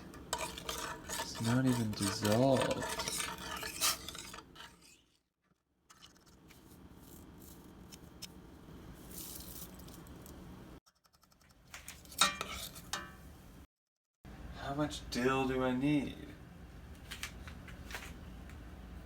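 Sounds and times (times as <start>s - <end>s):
utensil stirring and scraping in pot: 0.0s - 5.1s, 5.9s - 8.2s, 11.9s - 13.4s.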